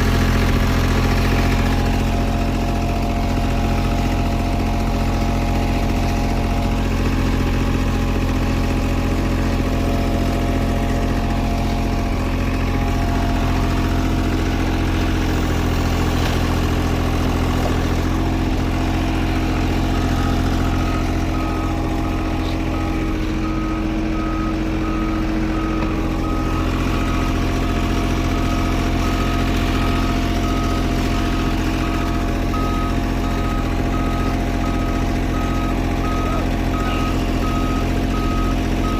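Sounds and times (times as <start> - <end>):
diesel paving machine running: 0.0 - 38.9
backup alarm beeping: 17.9 - 38.9.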